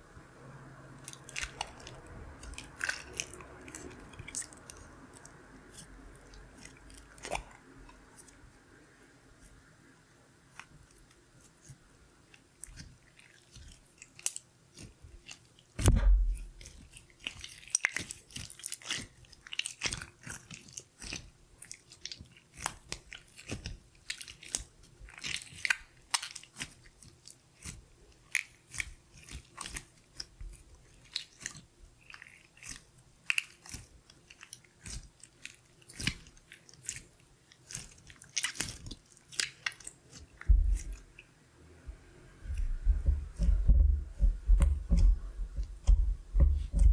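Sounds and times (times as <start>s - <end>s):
slime popping and crackling: 1.0s - 7.6s, 12.4s - 41.2s
thump: 15.8s - 16.4s.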